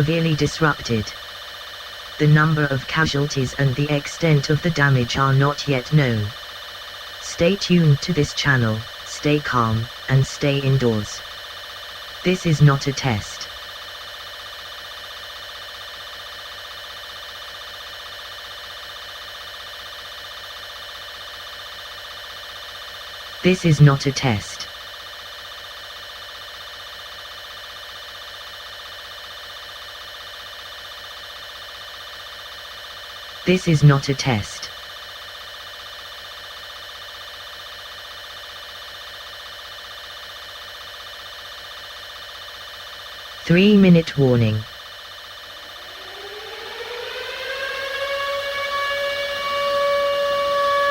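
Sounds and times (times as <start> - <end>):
buzzy fluttering alarm tone: 0.0 - 1.3, 2.2 - 6.5, 7.2 - 11.2, 12.2 - 13.5, 23.5 - 24.7, 33.5 - 34.7, 45.4 - 50.9.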